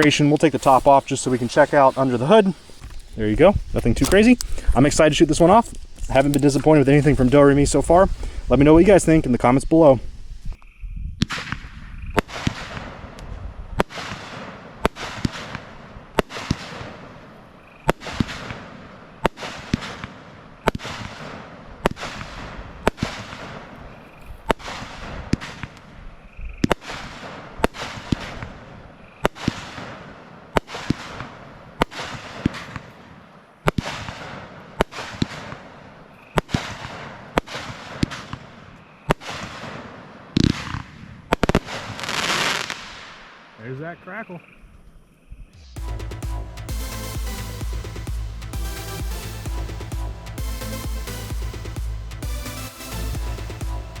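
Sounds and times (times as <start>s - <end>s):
firework shots banging: 0.0s - 3.0s, 11.2s - 26.0s, 26.6s - 43.6s.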